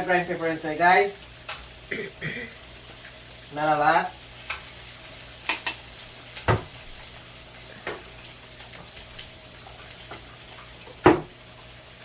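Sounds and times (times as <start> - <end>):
onion sizzling in a pot: 0.0 - 12.0
spoon knocking against pot: 5.5 - 5.8.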